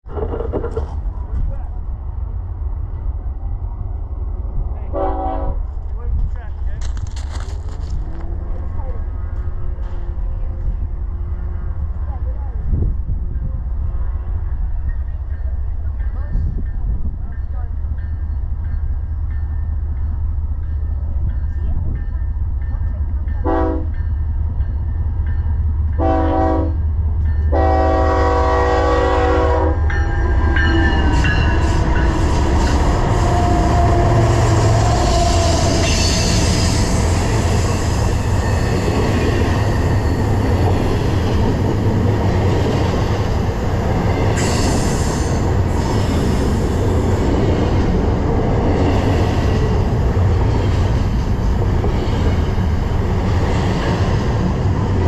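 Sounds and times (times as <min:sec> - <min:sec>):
freight train rumble: 0:00.0 - 0:55.0
locomotive air horn blasts: 0:04.9 - 0:05.6, 0:23.4 - 0:23.9, 0:26.0 - 0:26.8, 0:27.5 - 0:29.9.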